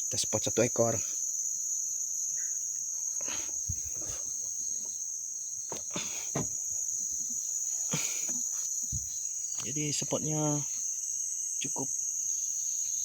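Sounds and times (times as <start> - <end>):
insects chorus: 0.0 - 13.0
faint knocks or rustles: 5.7 - 9.7.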